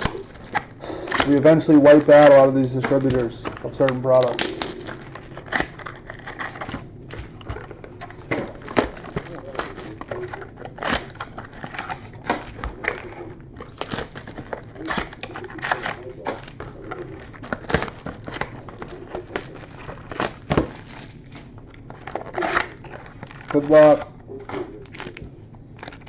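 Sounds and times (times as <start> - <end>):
handling rustles and clicks: 0.0 - 26.0
plastic wrapping crinkling and tearing: 0.0 - 26.0.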